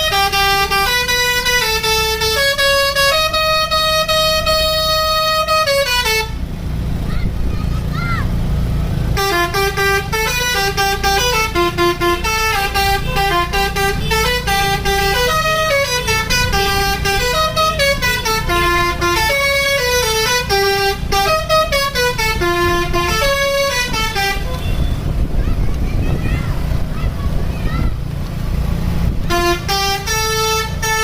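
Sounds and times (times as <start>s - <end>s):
air horns playing melody: 0.0s - 6.4s, 9.2s - 25.1s, 29.2s - 31.0s.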